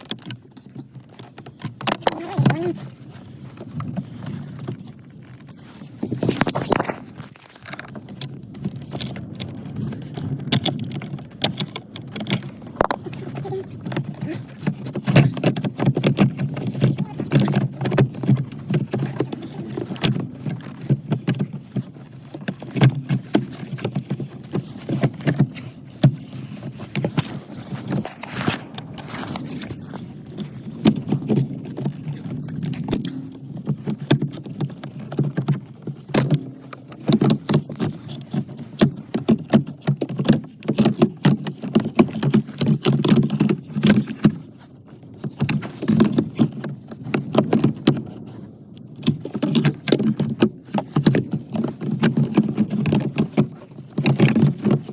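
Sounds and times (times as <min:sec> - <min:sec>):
hand tools clicking and knocking: 0:10.5 - 0:44.4.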